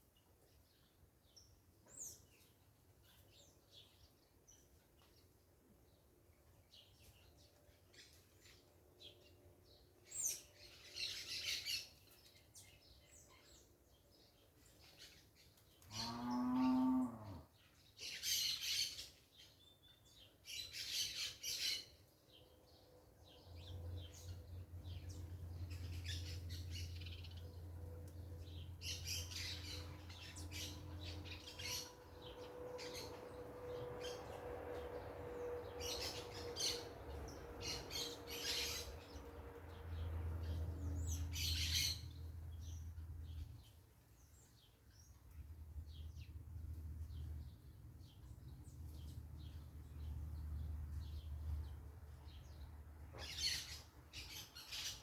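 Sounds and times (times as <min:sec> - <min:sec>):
cow mooing: 0:15.9 - 0:17.5.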